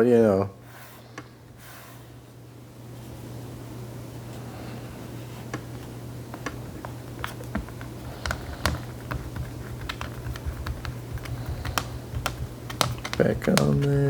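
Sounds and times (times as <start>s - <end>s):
steady low hum: 0.0s - 14.0s
fingers tapping on plastic: 6.3s - 14.0s.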